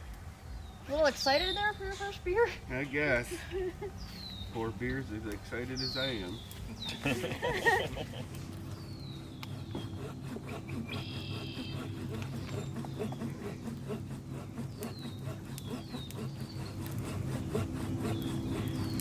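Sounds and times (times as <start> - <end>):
saw cutting firewood: 0.9 - 19.0
bird calling: 5.7 - 19.0.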